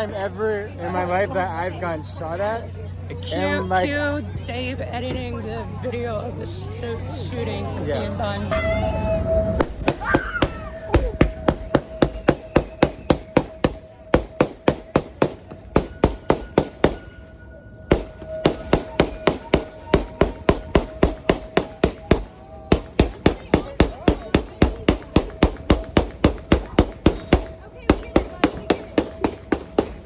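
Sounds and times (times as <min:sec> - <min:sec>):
steady faint tone: 0:00.0 - 0:30.0
rapid gunfire: 0:09.8 - 0:17.1, 0:17.9 - 0:30.0.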